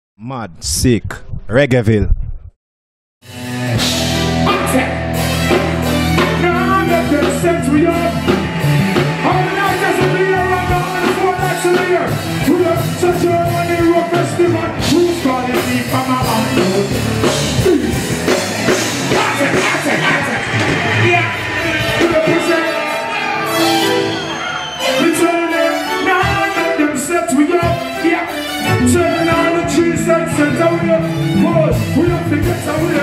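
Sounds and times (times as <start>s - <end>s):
live reggae band music: 3.2s - 33.0s
person singing: 28.6s - 33.0s.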